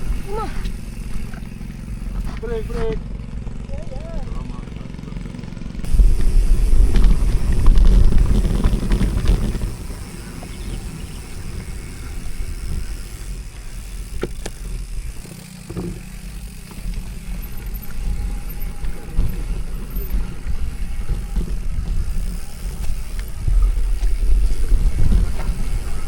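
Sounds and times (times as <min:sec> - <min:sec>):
bike rattling clicks: 0:00.0 - 0:03.7, 0:05.8 - 0:26.0
wind and ground rumble: 0:05.6 - 0:26.0.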